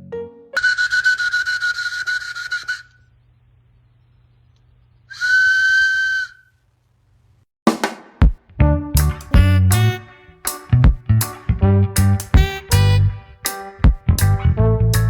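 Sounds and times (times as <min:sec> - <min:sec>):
high whistle: 0:05.1 - 0:06.5.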